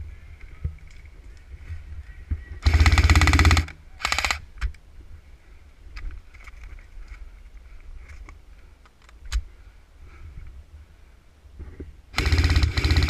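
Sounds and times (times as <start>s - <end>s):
airsoft gun automatic bursts: 2.6s - 4.4s, 12.2s - 13.0s.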